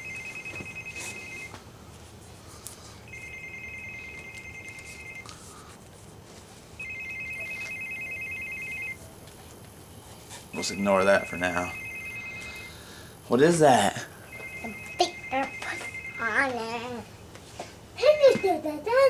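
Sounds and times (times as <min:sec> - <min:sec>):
telephone ringing two-tone trill: 0:00.0 - 0:01.6, 0:03.1 - 0:05.3, 0:06.8 - 0:09.0, 0:10.6 - 0:12.9, 0:14.3 - 0:16.5.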